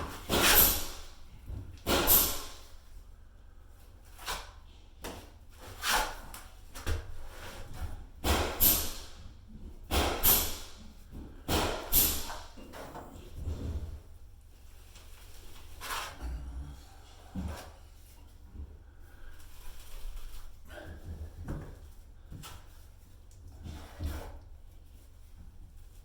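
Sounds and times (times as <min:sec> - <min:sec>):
drywall knife scraping compound: 0:00.0 - 0:01.1, 0:04.0 - 0:09.3, 0:15.2 - 0:18.4, 0:19.1 - 0:24.6.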